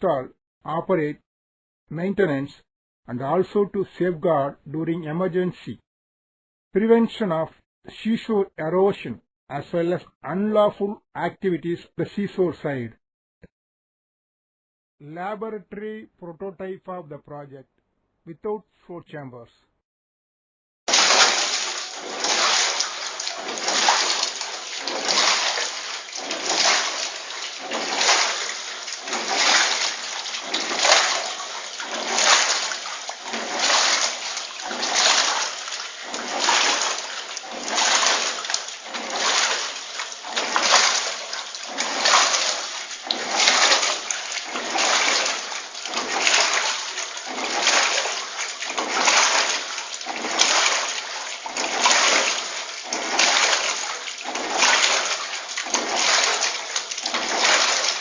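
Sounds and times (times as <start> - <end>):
water splashing in wave tank: 20.9 - 58.0.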